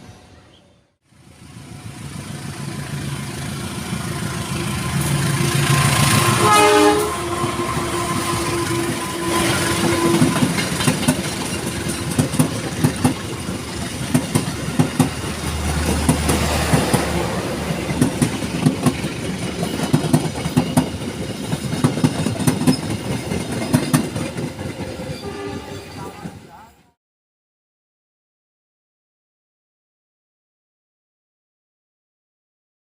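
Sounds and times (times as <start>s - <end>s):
train horn: 6.0s - 10.6s, 25.2s - 26.4s
train wheels clacking over joints: 8.5s - 26.4s.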